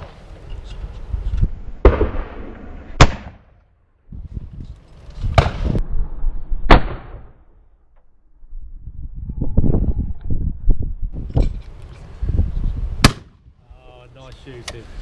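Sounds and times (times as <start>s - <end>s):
shotgun shots echoing: 1.8s - 3.5s, 13.0s - 13.4s.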